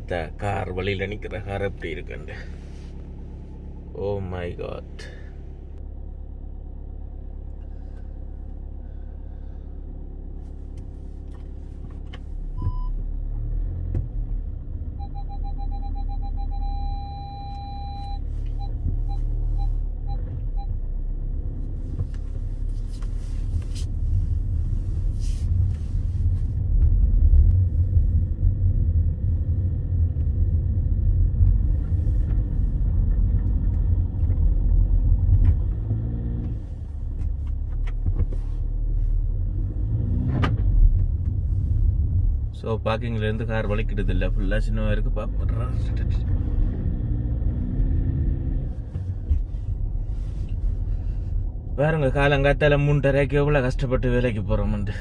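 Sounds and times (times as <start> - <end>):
car engine and tyres rumbling: 0.0 - 55.0
electronic warning beep: 15.0 - 20.7.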